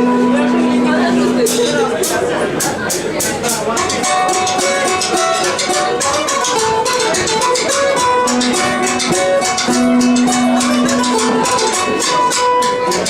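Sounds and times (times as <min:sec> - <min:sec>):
folk band playing live: 0:00.0 - 0:13.0.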